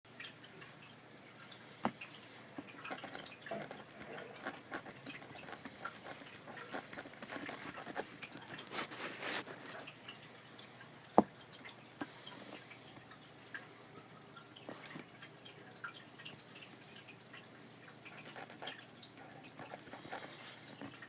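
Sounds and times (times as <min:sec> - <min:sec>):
pen scratching and tapping: 0:02.9 - 0:09.7, 0:18.2 - 0:18.8, 0:19.6 - 0:20.9.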